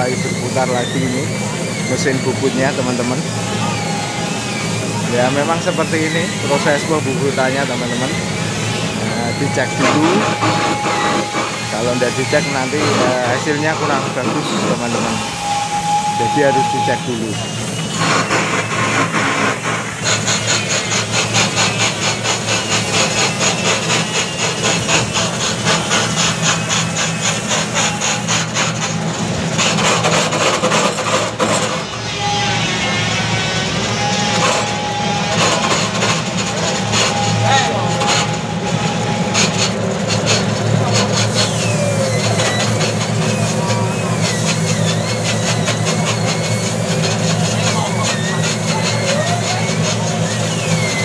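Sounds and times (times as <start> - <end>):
thin wavering high tone: 0.0 - 18.0
cutting tool rasping on spinning wood: 0.0 - 31.9, 39.2 - 51.0
diesel engine humming: 0.0 - 51.0.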